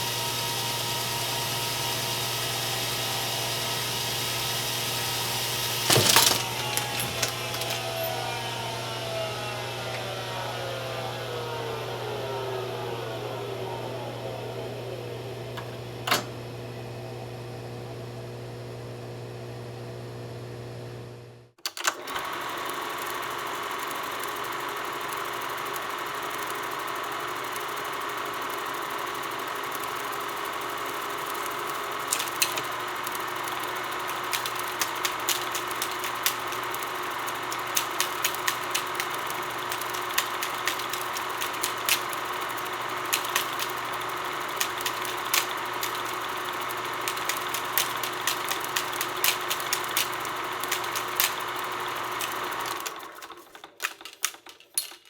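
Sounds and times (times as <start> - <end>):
film projector motor hum: 0.0 - 54.4
sharp clicks: 31.2 - 55.0.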